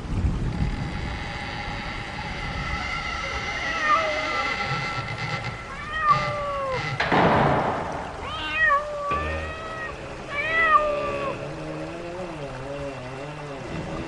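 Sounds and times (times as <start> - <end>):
faint steady drone: 0.0 - 14.0
cat meowing: 3.6 - 4.4, 5.7 - 7.0, 8.2 - 11.4.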